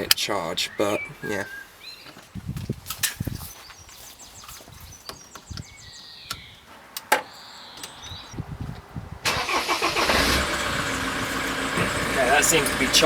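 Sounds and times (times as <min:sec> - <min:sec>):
car engine starting and running: 0:09.2 - 0:13.0.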